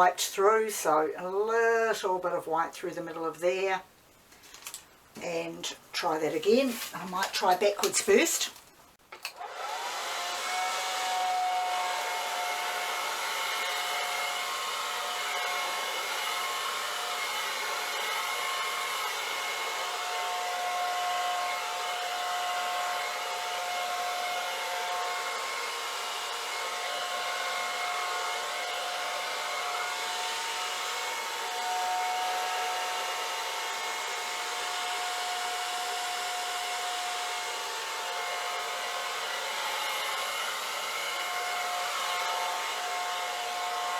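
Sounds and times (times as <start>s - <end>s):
hair dryer running: 9.2s - 43.9s.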